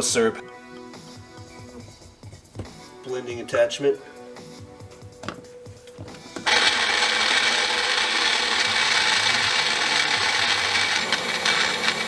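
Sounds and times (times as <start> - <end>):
blender motor whirring: 6.4 - 12.0.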